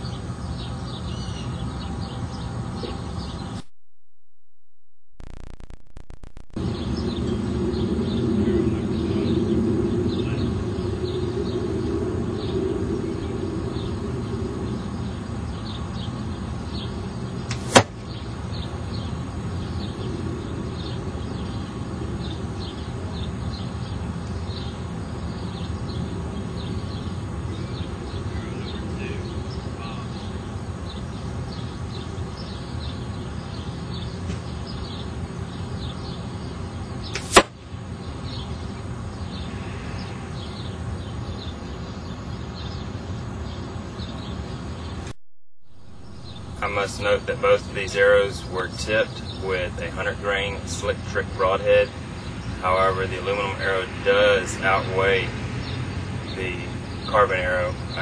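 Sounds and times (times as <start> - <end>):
arrow shot from bow: 17.5 - 18.0, 37.2 - 37.6
steady background hiss: 45.9 - 58.0.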